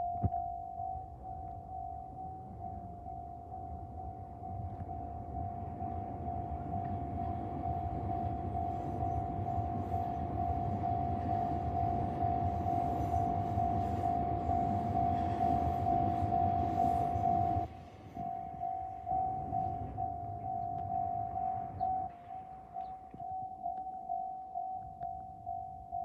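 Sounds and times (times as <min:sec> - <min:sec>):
level-crossing warning bell: 0:00.0 - 0:26.0
passing train rumble: 0:01.8 - 0:23.7.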